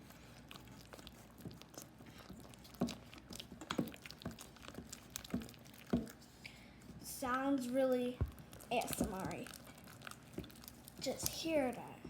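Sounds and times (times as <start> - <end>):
slime stirred with sticky clicks: 0.0 - 12.0.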